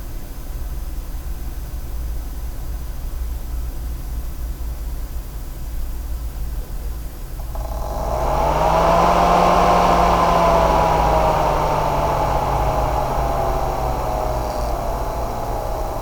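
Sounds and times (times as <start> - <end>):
low hum: 7.4 - 16.0
power supply fan whirring whine: 7.4 - 16.0.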